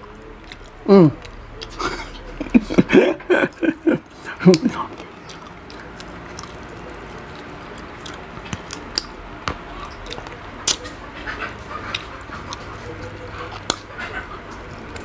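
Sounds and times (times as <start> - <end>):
person chewing food: 0.0 - 15.0
sharp wet clicks: 4.5 - 9.2.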